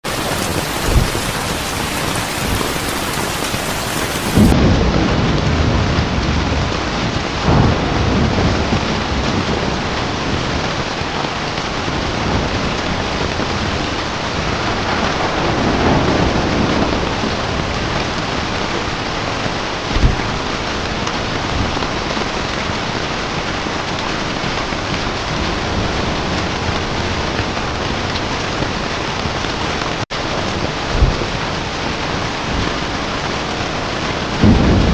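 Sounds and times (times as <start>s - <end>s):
sharp thunder cracks: 0.0s - 10.7s, 14.4s - 18.0s, 34.4s - 34.9s
thunder rolling: 0.0s - 11.0s, 12.0s - 18.7s, 30.3s - 34.9s
heavy rain: 0.0s - 34.9s.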